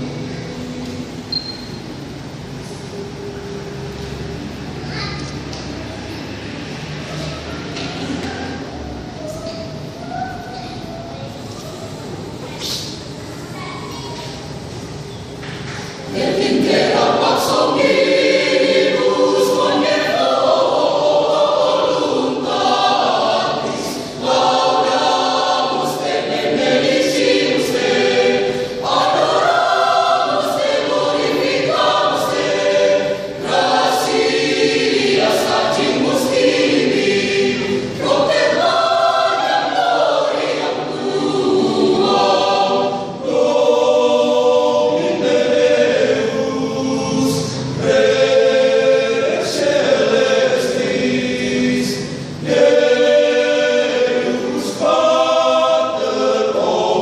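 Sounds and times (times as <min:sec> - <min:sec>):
choir singing: 0:00.0 - 0:01.5, 0:15.8 - 0:57.0.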